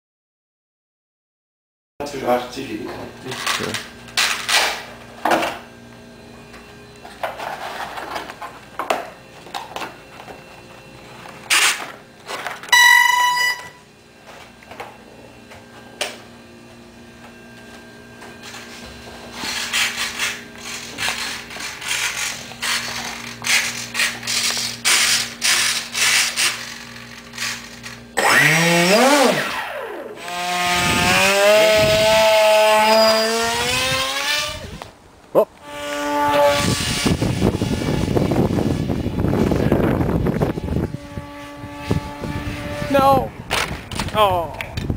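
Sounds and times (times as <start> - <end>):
electric motor whine: 3.3 - 35.0, 35.6 - 44.1
short electronic beep: 12.7 - 13.8.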